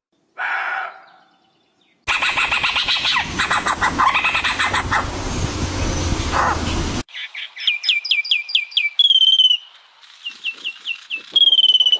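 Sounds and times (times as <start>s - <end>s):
songbird singing: 0.1s - 11.9s
loud steady noise: 2.1s - 7.0s.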